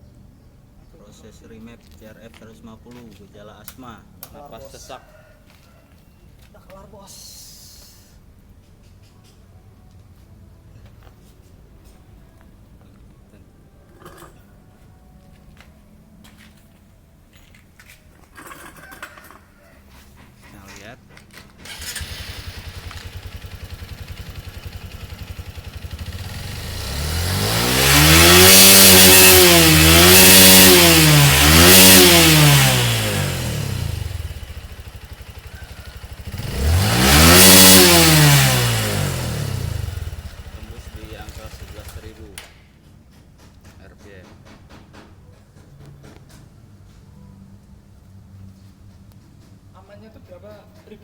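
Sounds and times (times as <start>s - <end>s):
motorcycle engine revving: 21.6s - 42.5s.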